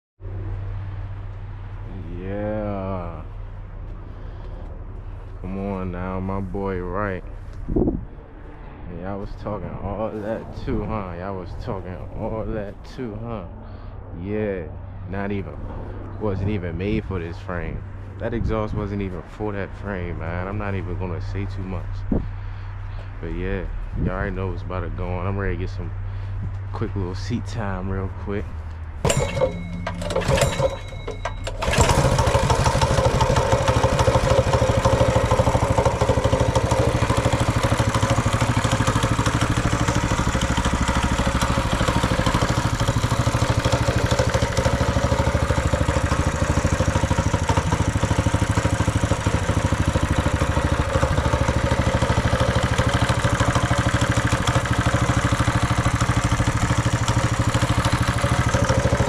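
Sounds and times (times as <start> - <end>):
small engine running: 28.5 - 59.0.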